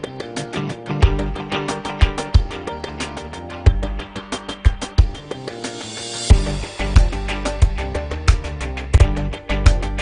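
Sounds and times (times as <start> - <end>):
plucked guitar notes: 0.0 - 10.0
drum beat: 0.4 - 2.6, 3.7 - 5.3, 6.3 - 10.0
hi-hat ticks: 4.8 - 10.0.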